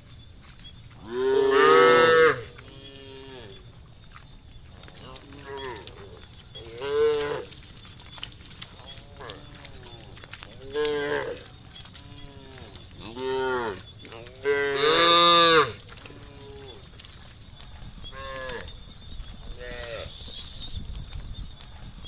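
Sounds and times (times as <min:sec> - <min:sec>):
cows mooing: 0:01.0 - 0:03.6, 0:05.0 - 0:07.6, 0:08.7 - 0:16.9, 0:18.1 - 0:18.7, 0:19.5 - 0:20.2.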